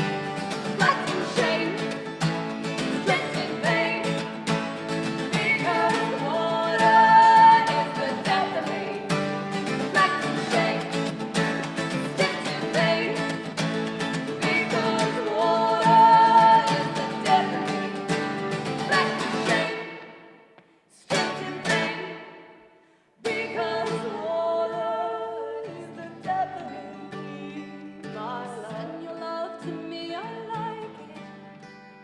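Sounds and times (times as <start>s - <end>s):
acoustic guitar strummed chords: 0.0s - 22.7s.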